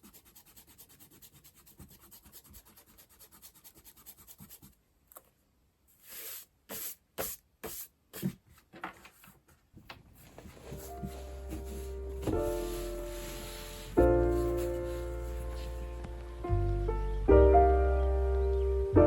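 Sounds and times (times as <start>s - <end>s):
marker scratching on paper: 0.0s - 4.7s, 6.0s - 8.4s, 10.3s - 16.0s.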